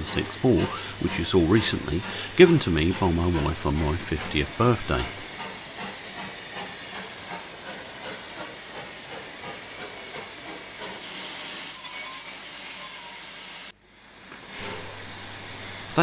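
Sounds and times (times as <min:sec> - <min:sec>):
steam locomotive exhaust beats: 0:00.0 - 0:13.5
steam hissing: 0:00.0 - 0:13.7
thin high tone: 0:11.6 - 0:13.4.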